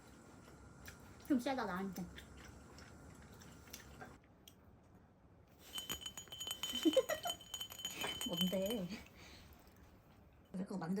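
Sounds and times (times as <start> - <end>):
utensils clinking on dishes: 5.6 - 9.2.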